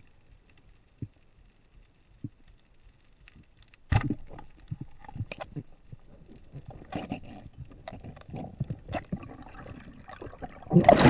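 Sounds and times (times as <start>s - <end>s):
crackles: 0.0s - 11.0s
water sounds: 2.2s - 11.0s
sharp knocks underwater: 3.9s - 5.4s.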